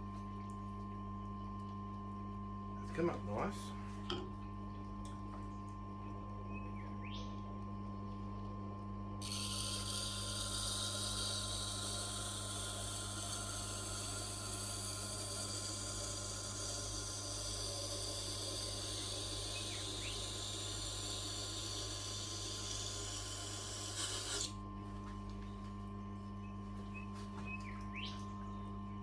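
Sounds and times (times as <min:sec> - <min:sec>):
grinder motor humming: 0:09.2 - 0:24.6
knife grinding hiss: 0:09.2 - 0:24.6.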